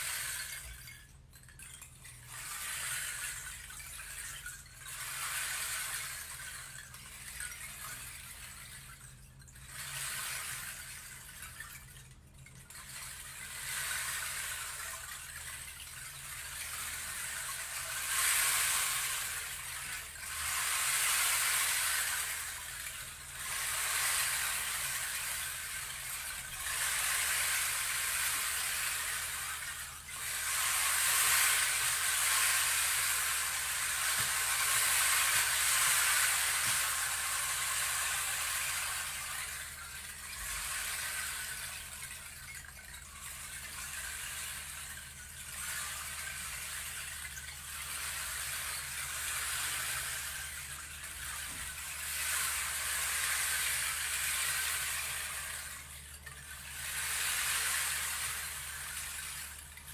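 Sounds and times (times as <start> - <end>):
stream water running: 12.9 - 59.9.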